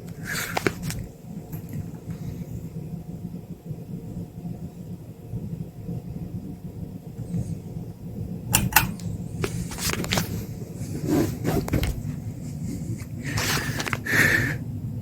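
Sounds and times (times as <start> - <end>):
steady low rumble: 0.8 - 13.3
sharp clicks and knocks: 8.5 - 10.3.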